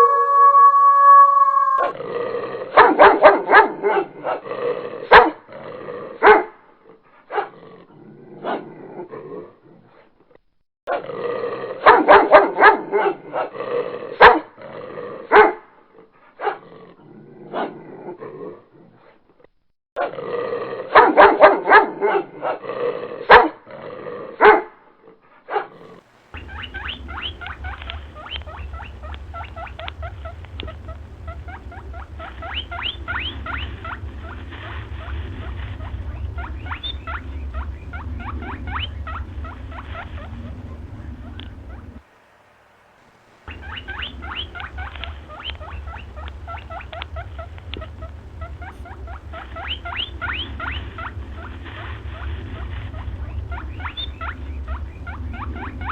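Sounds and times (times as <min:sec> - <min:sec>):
fast small ticks: 0:26.0 - 0:55.9
low hum: 0:26.0 - 0:55.9.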